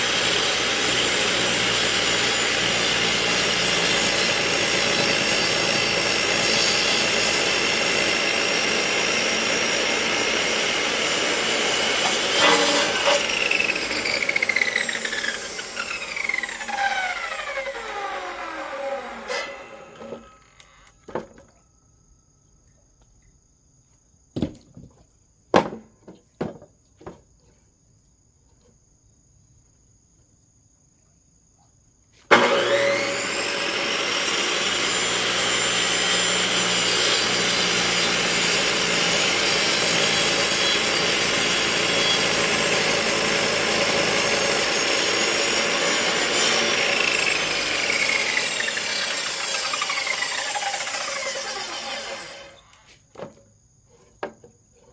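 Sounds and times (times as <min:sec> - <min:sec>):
circular saw cutting wood: 0:00.0 - 0:20.9, 0:32.3 - 0:53.0.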